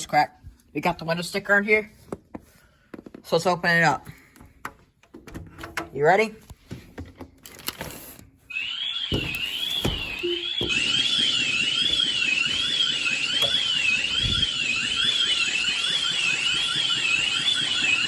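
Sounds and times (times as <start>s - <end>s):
warbling alarm siren: 8.5s - 18.0s
window knocks: 9.1s - 13.6s.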